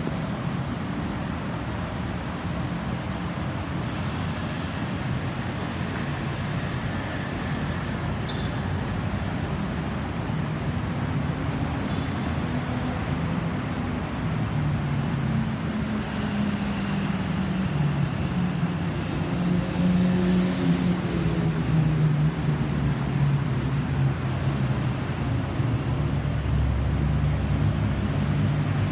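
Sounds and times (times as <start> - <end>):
road noise: 0.0 - 28.9.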